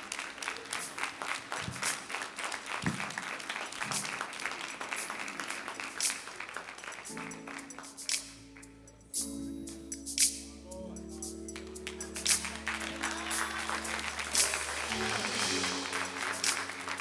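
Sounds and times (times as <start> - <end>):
congregation applauding: 0.0 - 8.1, 11.6 - 17.0
held instrument chords: 8.4 - 17.0.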